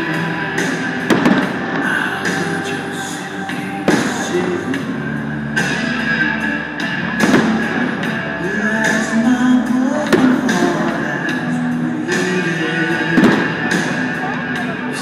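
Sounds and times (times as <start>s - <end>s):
music with guitar and singing: 0.0s - 15.0s
sharp hits: 0.9s - 2.5s, 7.2s - 8.2s.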